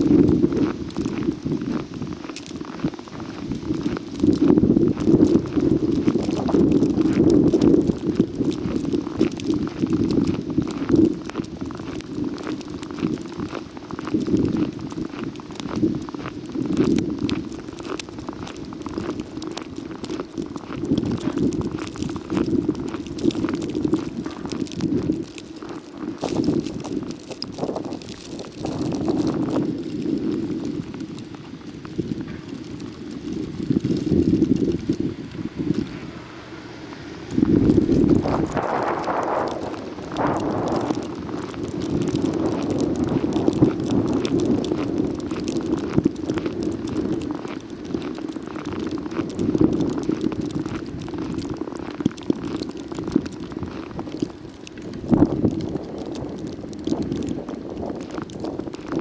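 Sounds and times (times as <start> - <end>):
footsteps crunching through snow: 0.0 - 59.0
wind on microphone: 0.0 - 59.0.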